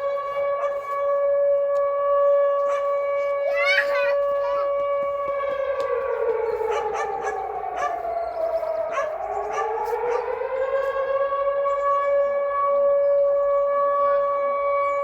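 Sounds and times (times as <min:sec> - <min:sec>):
air raid siren wailing: 0:00.0 - 0:15.0.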